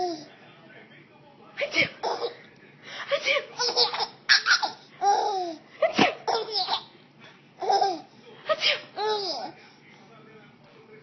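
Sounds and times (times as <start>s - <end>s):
baby laughing: 1.8s - 2.4s, 3.1s - 6.9s, 7.6s - 9.6s.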